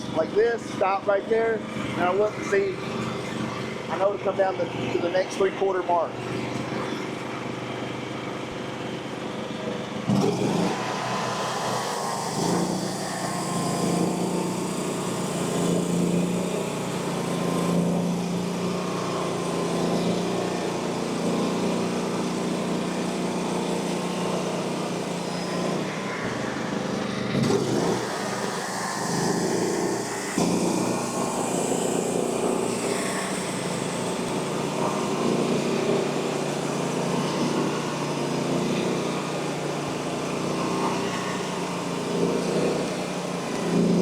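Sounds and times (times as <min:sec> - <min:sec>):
bandsaw mill running: 0:00.0 - 0:44.0
saw blade cutting wood: 0:10.1 - 0:44.0.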